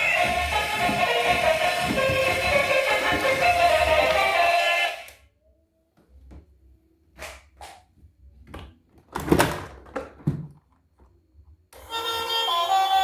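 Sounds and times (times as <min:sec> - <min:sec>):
handling knocks and scrapes: 0:00.0 - 0:04.3.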